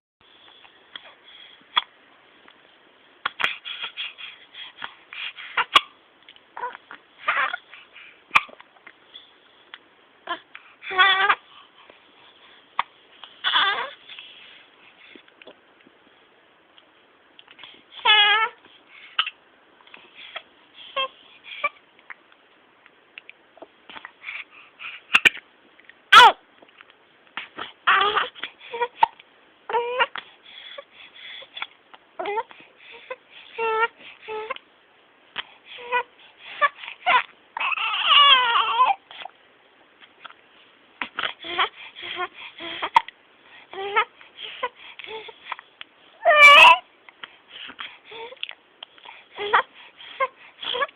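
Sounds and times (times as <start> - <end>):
baby breathing: 3.3 - 5.8, 23.9 - 25.3, 29.9 - 34.5, 41.0 - 45.7, 47.2 - 50.9
baby hiccuping: 19.2 - 19.4.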